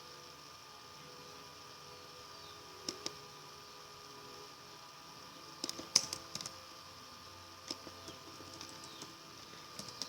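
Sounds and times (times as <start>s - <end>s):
faint electrical hum: 0.0s - 10.0s
keyboard and mouse clicks: 5.6s - 6.6s.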